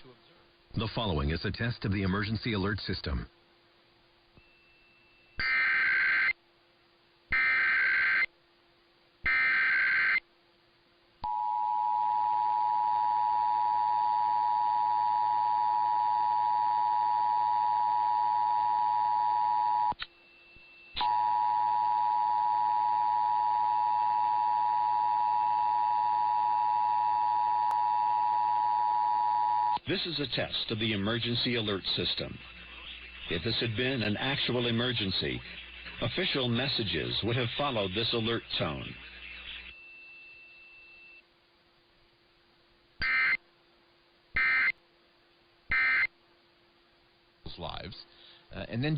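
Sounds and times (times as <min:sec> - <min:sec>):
screeching data bursts: 0:05.4 - 0:06.4, 0:07.3 - 0:08.3, 0:09.3 - 0:10.2.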